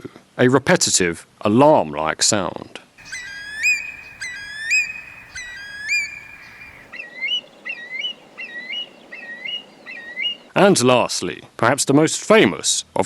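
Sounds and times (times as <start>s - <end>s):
curlew rising whistled calls: 3.0s - 10.5s.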